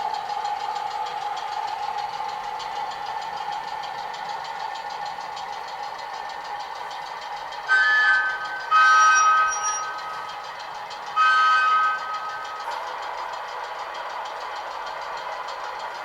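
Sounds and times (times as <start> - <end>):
model train diesel engine sound: 0.0 - 16.0
two-tone horn blasts: 7.7 - 10.2, 11.1 - 12.4.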